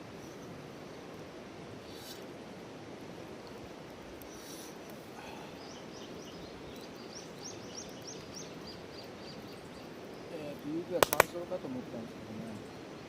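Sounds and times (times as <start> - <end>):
outdoor background hiss: 0.0 - 13.0
small bird chirping: 5.5 - 11.3.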